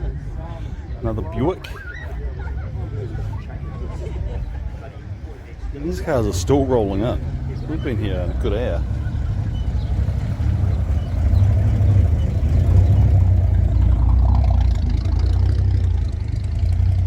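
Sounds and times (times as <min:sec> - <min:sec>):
car engine rumbling: 0:00.0 - 0:17.0.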